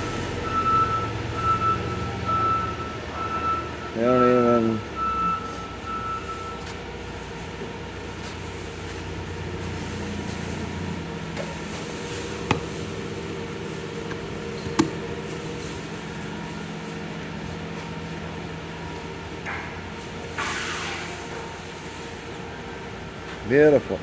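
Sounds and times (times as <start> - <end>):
vehicle engine idling: 0.0 - 24.0
sharp clicks or knocks: 14.0 - 15.0.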